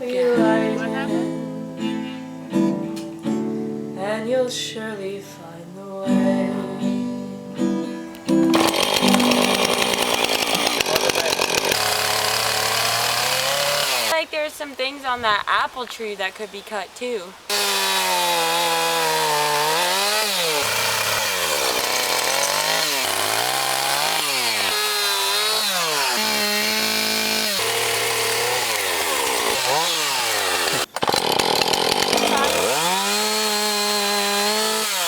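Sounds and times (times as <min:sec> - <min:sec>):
chainsaw engine revving: 0:08.3 - 0:14.2, 0:17.5 - 0:35.0.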